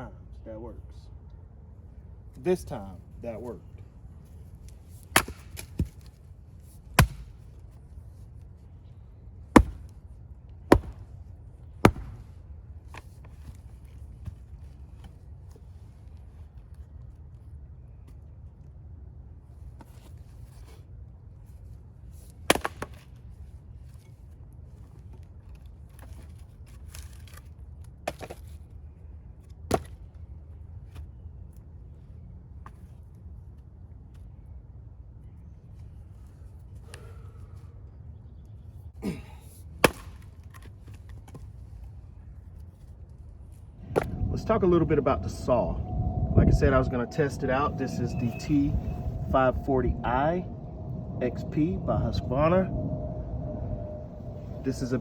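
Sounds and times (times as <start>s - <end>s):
axe chopping wood: 5.1s - 6.1s, 7.0s - 7.4s, 9.6s - 10.0s, 10.7s - 11.1s, 11.8s - 12.3s, 22.5s - 23.0s, 39.8s - 40.7s
low rumble: 43.5s - 55.0s.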